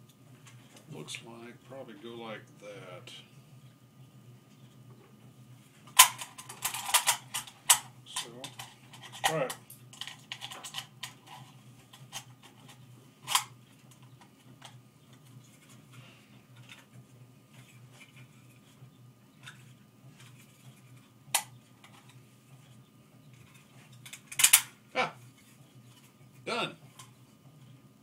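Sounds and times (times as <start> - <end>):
low steady hum: 0.0 - 28.0.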